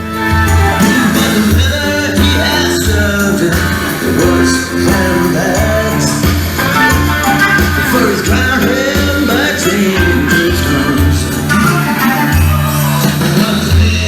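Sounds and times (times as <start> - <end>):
guitar: 0.0 - 14.0
person singing: 0.0 - 14.0
thumping bass beat: 0.0 - 14.0.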